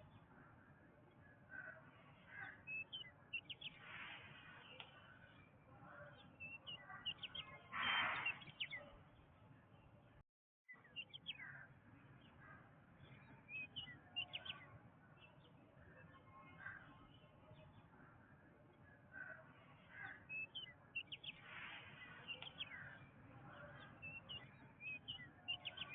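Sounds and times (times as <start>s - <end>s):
birds chirping and calling: 1.3s - 9.0s, 10.8s - 15.5s, 19.2s - 25.9s.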